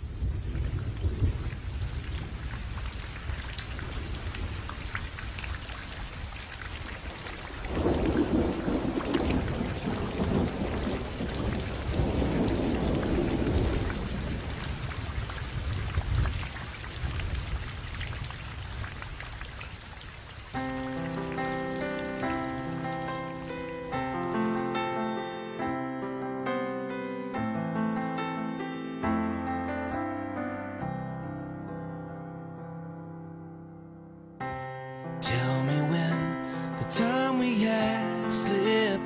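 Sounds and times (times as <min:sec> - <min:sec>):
low rolls of thunder: 0:00.0 - 0:20.4
rain pattering: 0:00.0 - 0:24.8.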